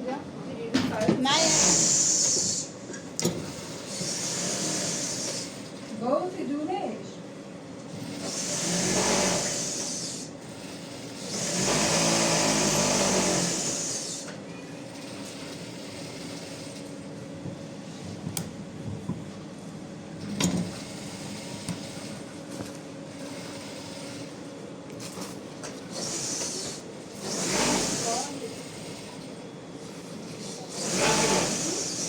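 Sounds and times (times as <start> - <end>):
electric sewing machine running: 1.3 - 2.7, 3.4 - 5.7, 8.0 - 14.3, 14.9 - 16.9, 25.9 - 29.4, 30.7 - 32.0.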